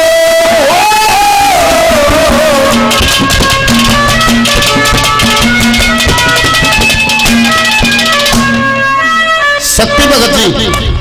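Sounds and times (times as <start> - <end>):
fast drum beat: 1.9 - 8.8
wavering held melody note: 2.3 - 10.8.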